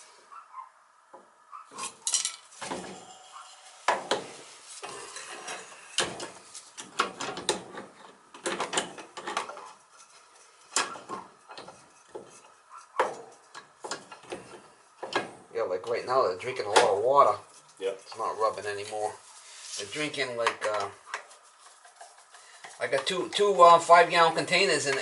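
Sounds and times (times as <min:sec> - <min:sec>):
metal tools clinking and scraping: 0:01.7 - 0:03.0.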